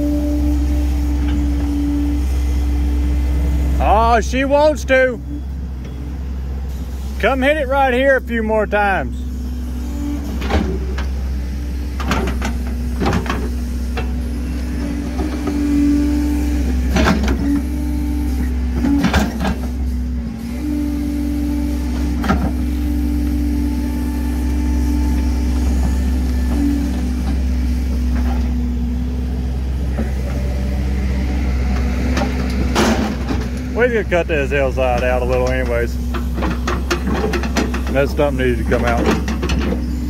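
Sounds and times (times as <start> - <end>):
diesel engine under load: 0.0 - 40.0.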